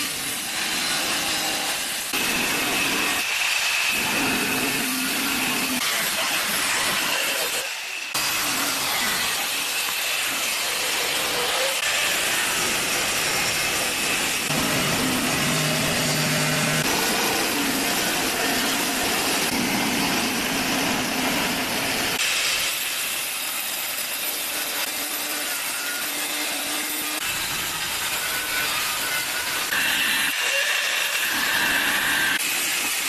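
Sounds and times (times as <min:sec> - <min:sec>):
power tool rasping: 0:00.0 - 0:33.0.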